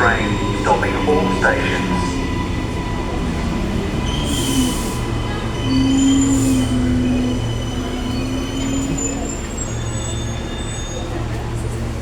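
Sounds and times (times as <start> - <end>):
train hum and rumble: 0.0 - 12.0
train wheels squealing: 3.8 - 11.8.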